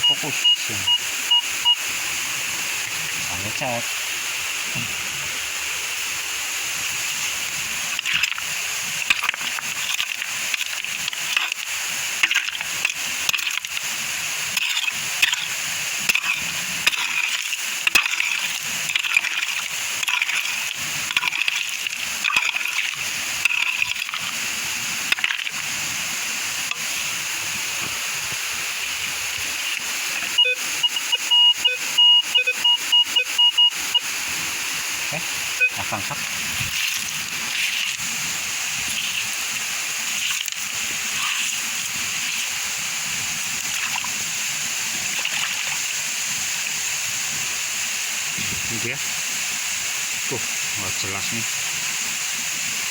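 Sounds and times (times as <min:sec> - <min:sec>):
metal detector beeps: 0:00.0 - 0:01.8, 0:30.3 - 0:34.1, 0:35.5 - 0:36.1
waterfall and stream rushing: 0:00.0 - 0:52.9
splashing in shallow water: 0:07.1 - 0:28.1, 0:35.1 - 0:46.9.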